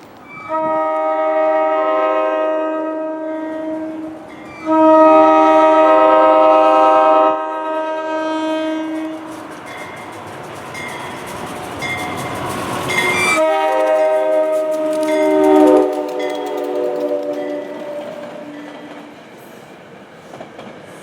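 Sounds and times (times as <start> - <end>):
moving train rushing: 0.0 - 21.0
train air horn: 0.4 - 9.4, 12.9 - 19.2
train wheel clicks: 9.0 - 19.3, 20.3 - 21.0.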